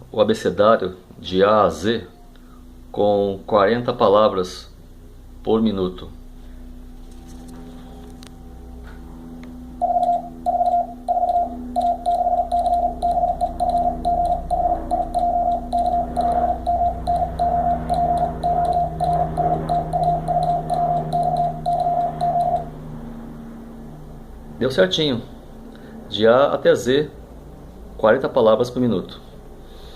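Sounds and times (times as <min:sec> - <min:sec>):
low hum: 0:04.5 - 0:28.4
morse code beeps: 0:09.8 - 0:22.7.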